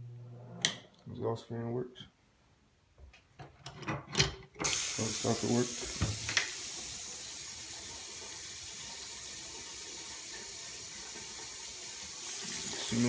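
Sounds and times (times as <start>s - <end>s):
sink faucet running: 4.6s - 13.0s.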